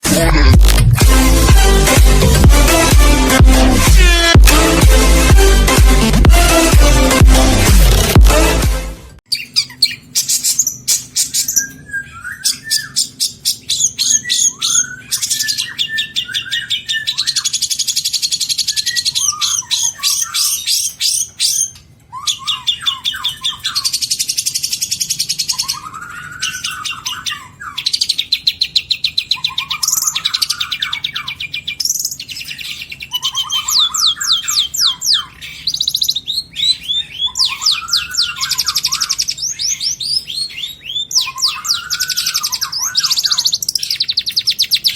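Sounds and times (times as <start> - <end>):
bird singing trills and chatter: 9.3 - 44.9.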